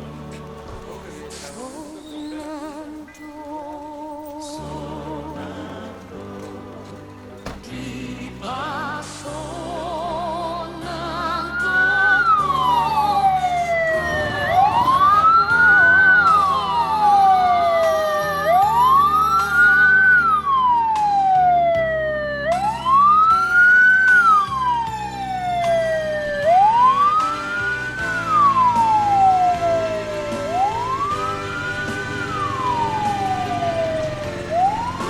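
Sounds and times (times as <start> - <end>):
siren wailing: 10.8 - 35.0.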